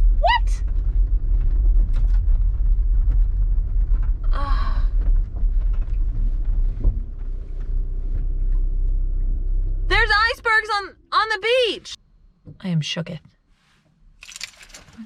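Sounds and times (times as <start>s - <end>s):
vehicle rumble inside cabin: 0.0s - 12.0s.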